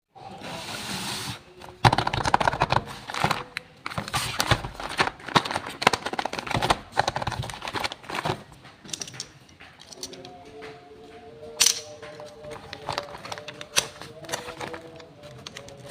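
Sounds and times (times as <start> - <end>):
plastic and cardboard crinkling: 1.4 - 9.3, 11.5 - 15.9.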